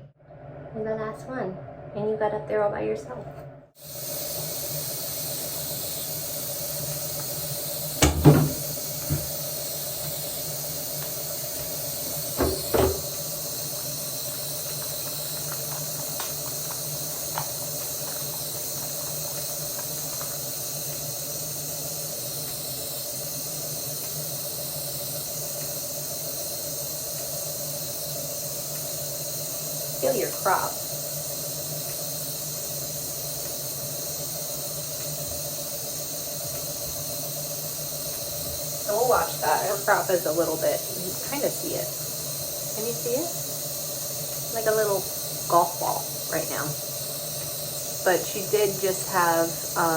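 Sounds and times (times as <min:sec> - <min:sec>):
faint steady hum: 0:00.0 - 0:49.9
shower water running: 0:03.8 - 0:49.9.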